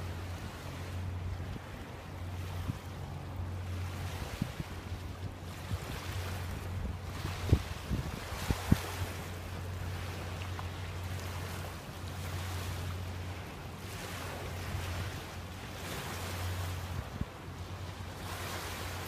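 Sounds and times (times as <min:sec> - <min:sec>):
water washing and lapping: 0:00.0 - 0:19.0
wind on microphone: 0:01.2 - 0:09.4.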